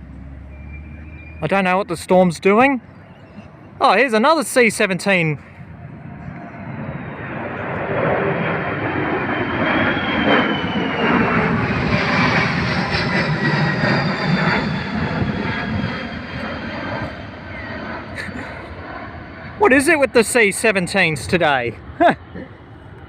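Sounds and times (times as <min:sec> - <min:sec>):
jet aircraft flying past: 0:00.0 - 0:23.0
jet engine whine sliding down: 0:00.0 - 0:23.0.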